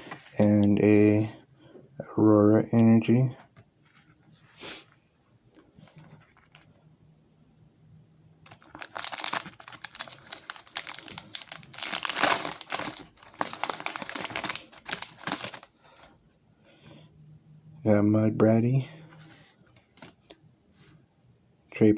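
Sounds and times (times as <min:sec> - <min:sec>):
foil wrapper crinkling and tearing: 0:08.5 - 0:15.7.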